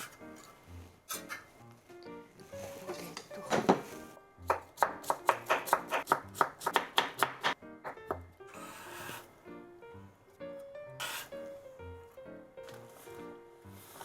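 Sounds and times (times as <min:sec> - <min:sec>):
background music: 0:00.0 - 0:14.0
knife chopping on cutting board: 0:04.5 - 0:08.2.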